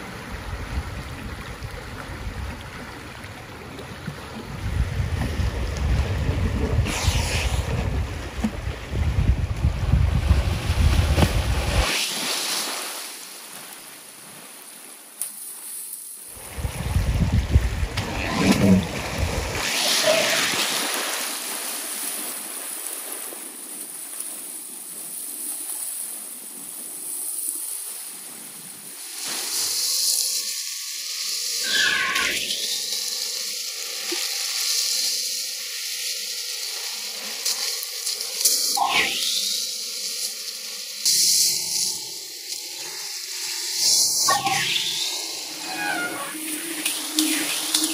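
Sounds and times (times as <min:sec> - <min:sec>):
wind buffeting microphone: 0:04.4 - 0:11.8, 0:16.4 - 0:19.6.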